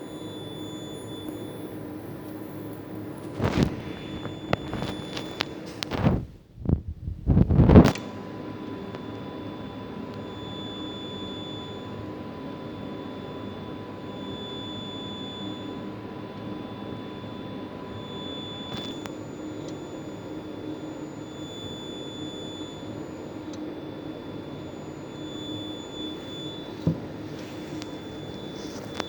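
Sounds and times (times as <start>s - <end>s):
high electric whine: 0.0s - 29.0s
low hum: 2.5s - 7.9s.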